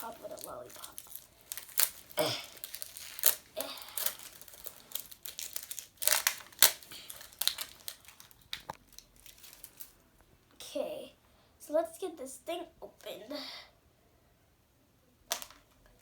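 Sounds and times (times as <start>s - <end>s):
plastic packaging crinkling and tearing: 0.0s - 10.0s.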